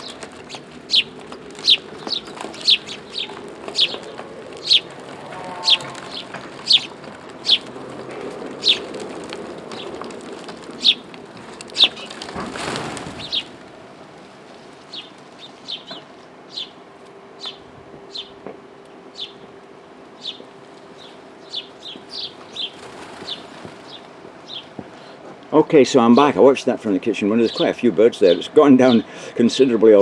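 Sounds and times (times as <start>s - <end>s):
small birds chirping: 0.0s - 13.7s, 14.4s - 16.8s, 17.4s - 18.4s, 19.1s - 25.2s
wings flapping: 0.0s - 16.2s, 21.0s - 25.1s.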